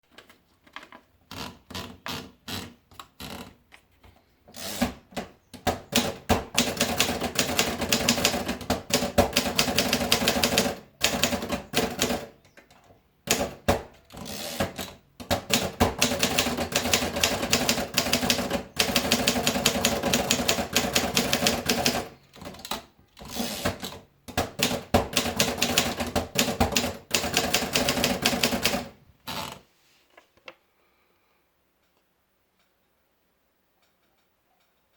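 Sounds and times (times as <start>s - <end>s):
manual typewriter typing: 0.8s - 3.6s, 4.5s - 12.4s, 13.3s - 29.6s.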